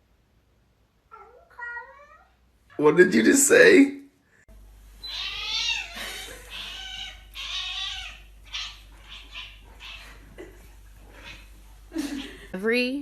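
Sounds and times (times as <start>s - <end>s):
cat meowing: 5.0s - 10.2s.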